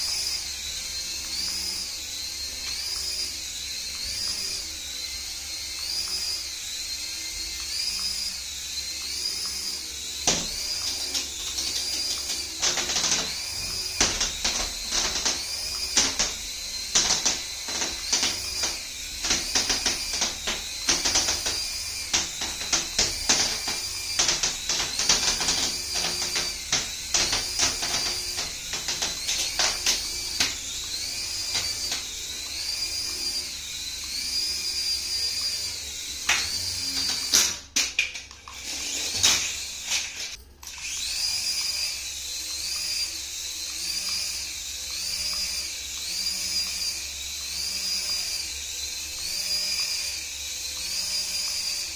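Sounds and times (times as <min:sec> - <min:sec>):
toy wavering electronic tone: 0:00.0 - 0:37.4.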